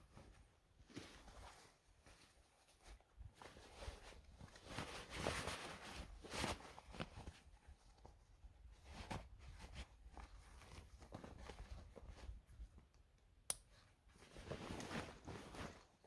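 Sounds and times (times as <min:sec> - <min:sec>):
camping gear rustling and crunching: 0:14.2 - 0:16.0.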